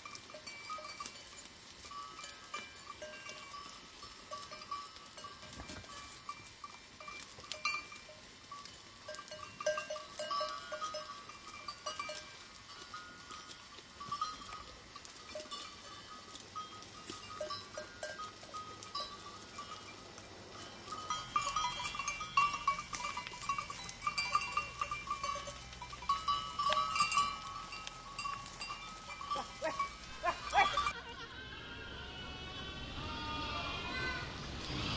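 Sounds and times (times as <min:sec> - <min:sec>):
neck bells clinking: 0:00.0 - 0:31.0
sheep and goats bleating: 0:09.0 - 0:34.9.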